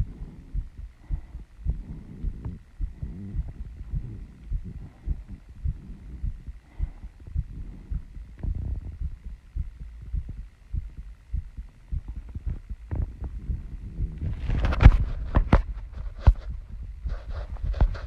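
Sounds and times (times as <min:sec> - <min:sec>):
heartbeat: 0:00.0 - 0:18.0
scratchy rustling and clicks: 0:12.1 - 0:18.0.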